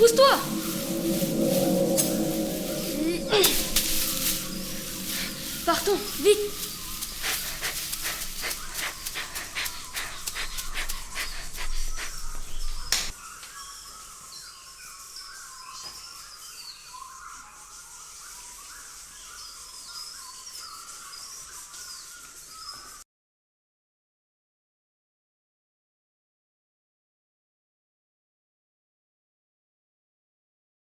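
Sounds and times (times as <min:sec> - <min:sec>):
sharp hit: 0:00.0 - 0:07.0
birds chirping: 0:00.0 - 0:23.0.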